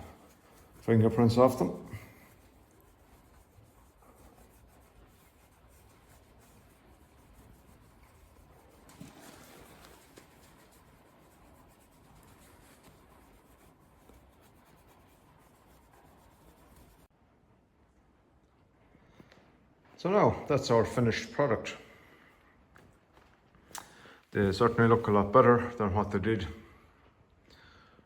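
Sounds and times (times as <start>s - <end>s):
cloth rubbing: 0.0s - 17.1s, 24.4s - 25.5s.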